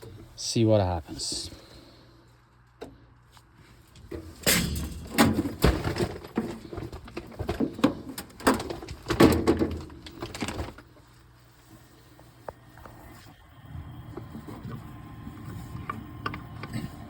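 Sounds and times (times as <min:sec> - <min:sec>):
faint steady hum: 0:00.0 - 0:17.0
knocks and rattles on cabinet: 0:04.1 - 0:10.6.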